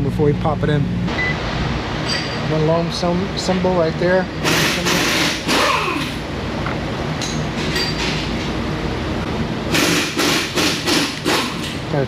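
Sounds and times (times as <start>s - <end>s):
short loud bursts of noise: 4.4s - 5.7s, 9.7s - 11.6s.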